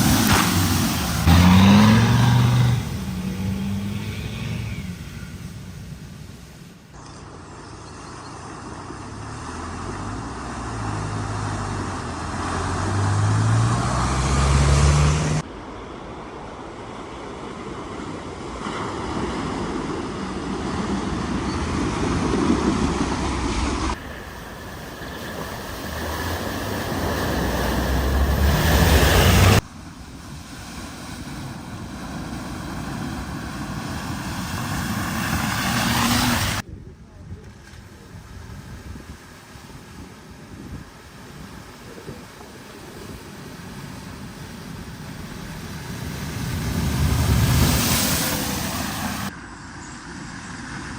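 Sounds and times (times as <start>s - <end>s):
engine revving: 0.0s - 6.3s, 9.1s - 15.4s, 23.9s - 29.6s, 32.3s - 36.6s
water spraying and splashing: 0.0s - 7.0s, 23.9s - 36.7s, 37.6s - 49.3s.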